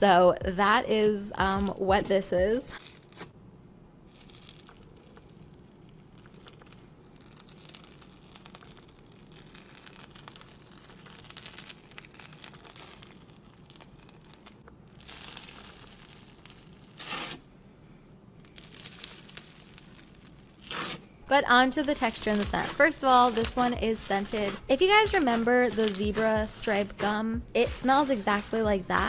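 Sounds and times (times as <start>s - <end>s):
slime crackling and popping: 4.0s - 17.4s, 18.4s - 29.0s
slime squish: 4.1s - 17.4s, 21.8s - 27.2s.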